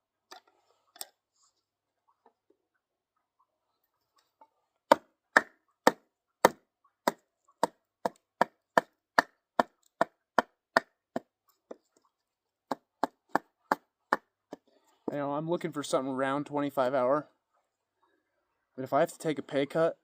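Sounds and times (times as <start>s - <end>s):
sharp wood chopping strikes: 4.9s - 11.2s.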